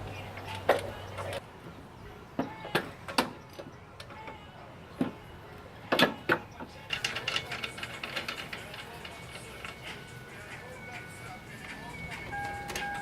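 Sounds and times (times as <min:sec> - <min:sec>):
metal tools clanking: 0:05.9 - 0:13.0.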